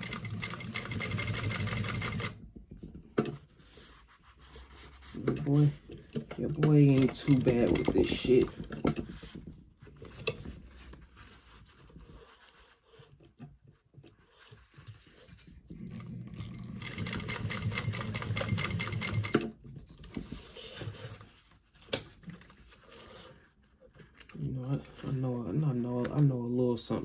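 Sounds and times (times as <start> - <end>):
sewing machine stitching: 0.0 - 2.4, 5.2 - 9.0, 15.8 - 19.5.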